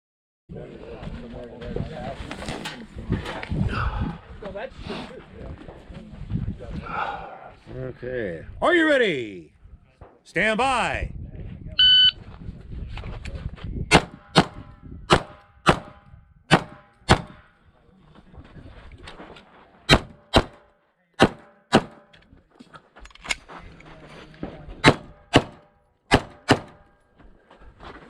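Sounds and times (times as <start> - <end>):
pistol shots: 13.9 - 17.5, 19.9 - 22.2, 24.8 - 26.9.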